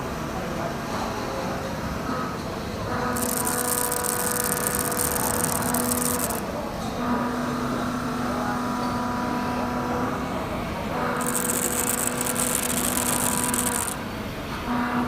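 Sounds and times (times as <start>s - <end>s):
milling cutter cutting metal: 3.2s - 6.4s, 11.2s - 14.0s.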